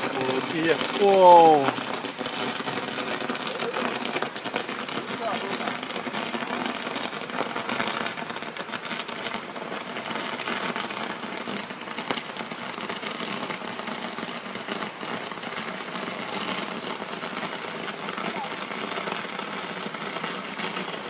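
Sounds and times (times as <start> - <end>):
fireworks crackling and hissing: 0.0 - 21.0.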